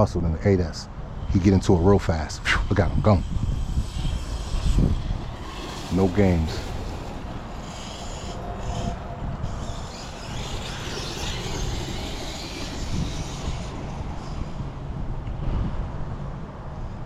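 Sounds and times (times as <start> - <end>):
electric motor whine: 1.0 - 17.0
tyre noise: 3.0 - 15.6.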